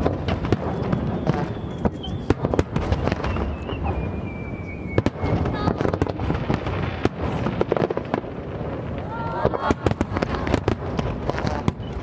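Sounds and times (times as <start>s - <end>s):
descending firework whistle: 0.0s - 6.2s, 11.2s - 12.0s
fireworks crackling bangs: 0.0s - 12.0s.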